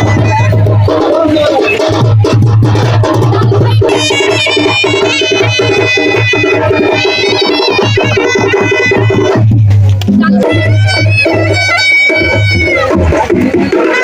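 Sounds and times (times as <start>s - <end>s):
fast traditional drumming: 0.0s - 14.0s
heavy low beat: 0.0s - 14.0s
high stepping melody: 0.0s - 14.0s.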